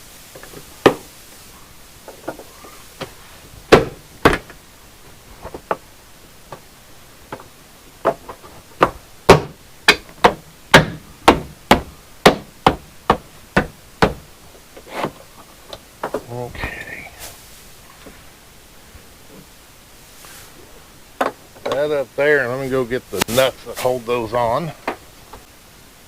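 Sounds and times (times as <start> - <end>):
sharp knocks: 3.7 - 4.6, 7.3 - 14.3.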